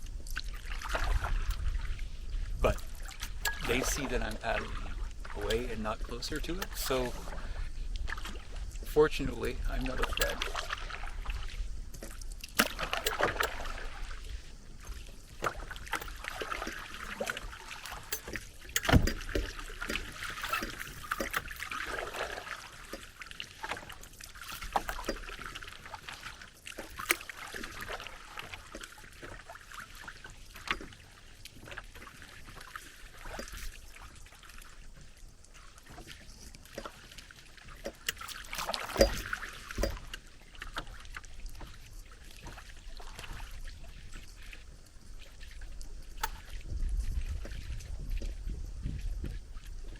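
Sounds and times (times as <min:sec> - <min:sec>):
paddle strokes swishing in water: 0:00.0 - 0:49.9
boat knocks and thumps: 0:14.8 - 0:23.9, 0:37.7 - 0:44.1.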